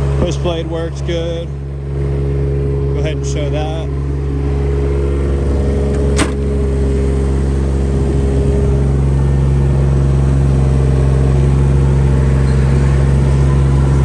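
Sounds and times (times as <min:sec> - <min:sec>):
diesel excavator engine running: 0:00.0 - 0:14.0
hydraulic blade working: 0:05.5 - 0:14.0.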